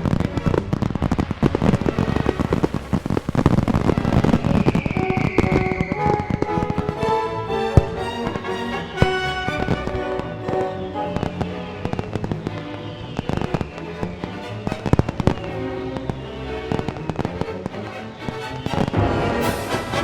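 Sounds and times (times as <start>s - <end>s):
fireworks bursting and crackling: 0.0s - 7.0s
orchestral music: 1.6s - 13.3s, 14.3s - 20.0s.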